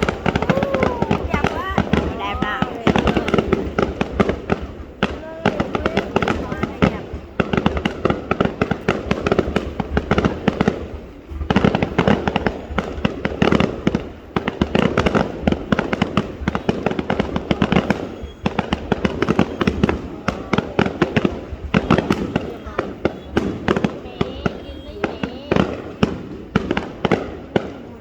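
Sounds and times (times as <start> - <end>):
fireworks bangs and crackles: 0.0 - 28.0.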